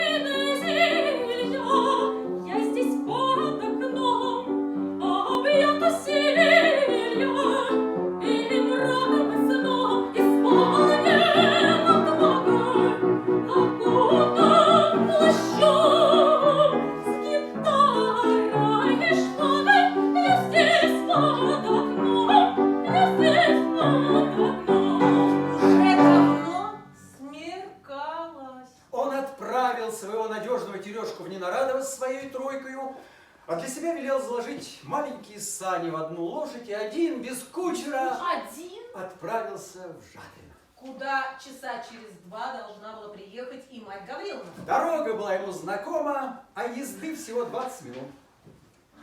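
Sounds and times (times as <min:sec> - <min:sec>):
piano: 0:00.0 - 0:27.8
classical singing with vibrato: 0:00.0 - 0:28.6.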